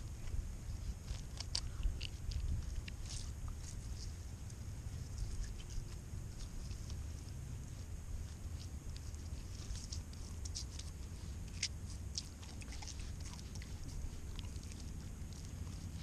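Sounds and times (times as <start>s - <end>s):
steady low rumble: 0.0s - 16.0s
small crackles and clicks: 1.0s - 4.6s.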